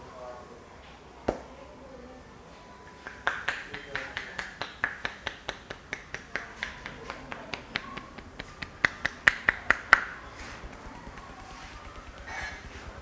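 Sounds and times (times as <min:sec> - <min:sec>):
rhythmic hand strikes on head: 0:03.1 - 0:13.0.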